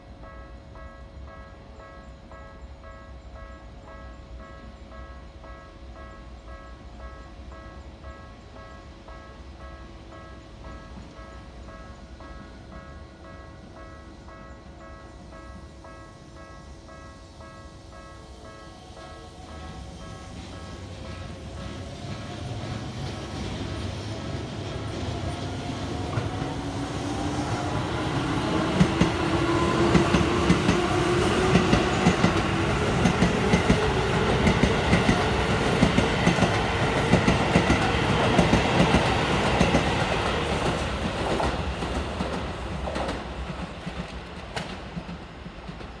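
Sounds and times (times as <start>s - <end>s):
train wheel clatter: 18.8s - 46.0s.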